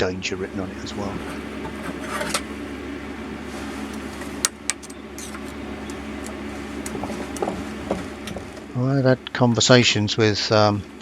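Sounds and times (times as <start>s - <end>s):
gas blowtorch burning: 0.6s - 8.8s.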